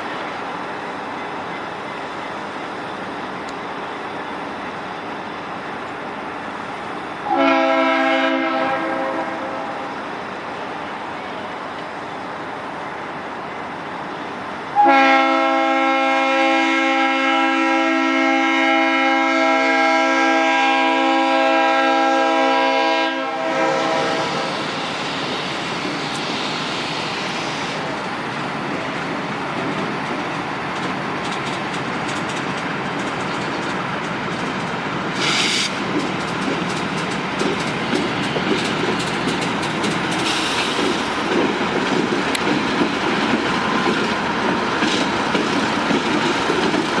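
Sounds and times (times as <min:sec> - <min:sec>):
locomotive air horn chord: 0:07.2 - 0:09.9, 0:14.8 - 0:24.6.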